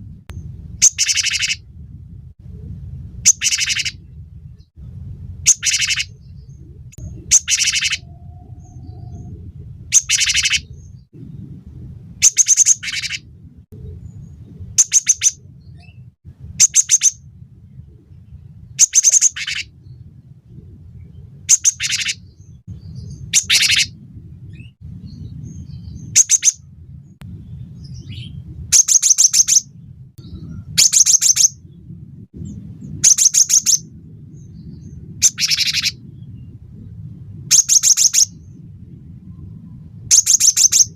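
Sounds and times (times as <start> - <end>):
low background hum: 0.0 - 40.9
bird singing sharp notes: 0.8 - 1.6, 3.3 - 4.0, 5.5 - 11.0.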